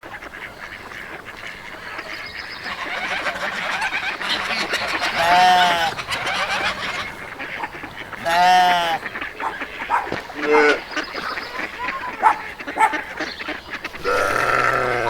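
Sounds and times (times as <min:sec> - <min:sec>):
farm animals calling: 0:00.0 - 0:15.0
loud drawn-out animal call: 0:02.6 - 0:13.2, 0:13.8 - 0:15.0.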